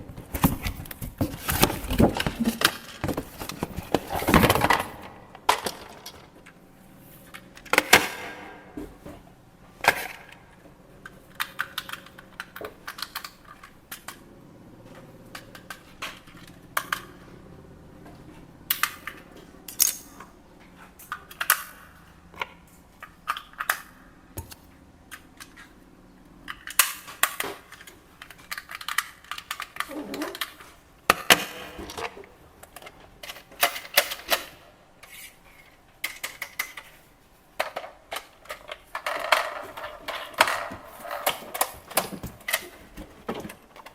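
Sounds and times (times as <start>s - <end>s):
packaging rustling: 0.0s - 6.4s
hands handling plastic toy: 0.1s - 6.6s.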